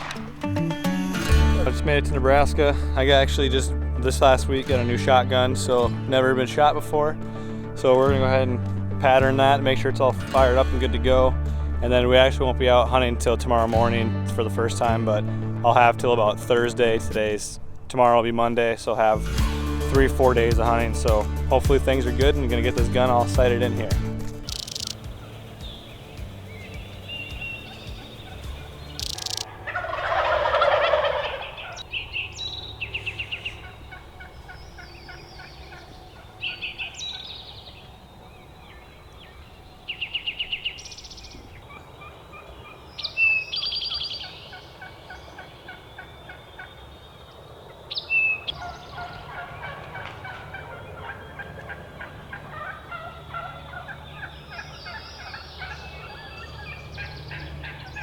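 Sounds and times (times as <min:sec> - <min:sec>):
chorus of turkey calls: 0:24.5 - 0:58.0
turkey gobbling: 0:27.0 - 0:58.0.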